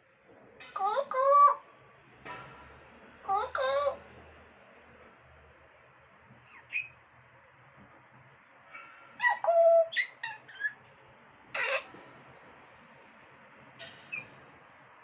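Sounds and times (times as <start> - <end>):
parrot whistles and squawks: 6.5 - 7.0, 8.7 - 10.8, 11.5 - 12.0, 13.9 - 14.4.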